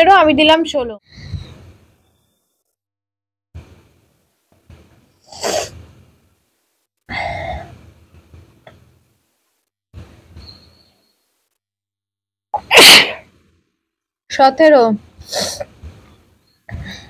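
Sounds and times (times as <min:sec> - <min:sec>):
person sneezing: 0:12.6 - 0:13.3.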